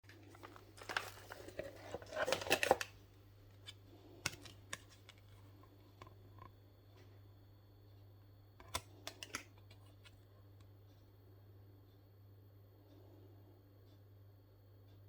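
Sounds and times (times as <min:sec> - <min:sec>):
packaging cutting and tearing: 0:00.8 - 0:02.9.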